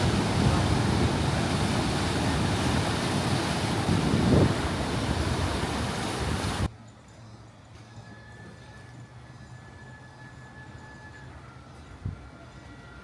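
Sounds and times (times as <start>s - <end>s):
ocean surf washing on beach: 0.0s - 6.7s
wind buffeting microphone: 0.0s - 6.7s.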